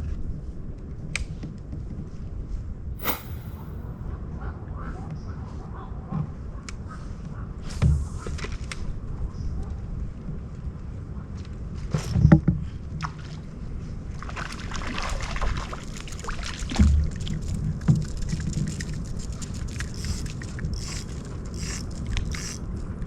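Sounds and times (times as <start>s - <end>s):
water splashing and sloshing: 13.0s - 20.7s.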